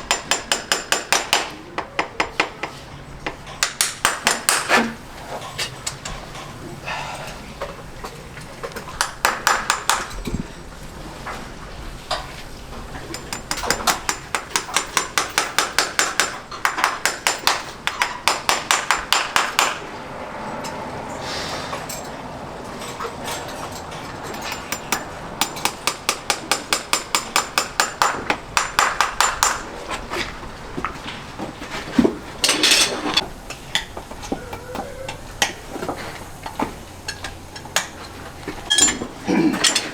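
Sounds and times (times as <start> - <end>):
hammer striking metal: 13.1 - 20.0.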